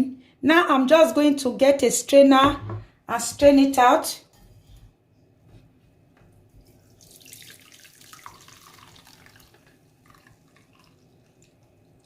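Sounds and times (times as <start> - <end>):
liquid pouring and splashing: 6.6 - 12.0
liquid trickling and dripping: 6.6 - 12.0.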